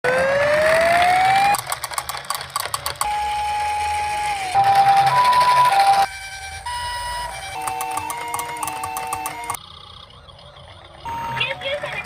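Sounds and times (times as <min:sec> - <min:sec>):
toy ambulance siren: 0:00.1 - 0:01.6, 0:02.8 - 0:09.6, 0:11.0 - 0:12.0
clicking and rattling: 0:01.5 - 0:03.1, 0:07.6 - 0:09.6.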